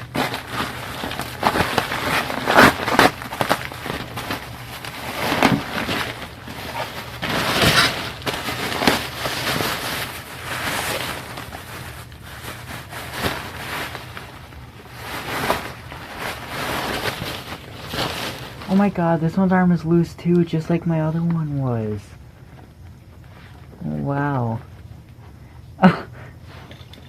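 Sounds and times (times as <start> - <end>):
packaging rustling and crackling: 0.0 - 19.2.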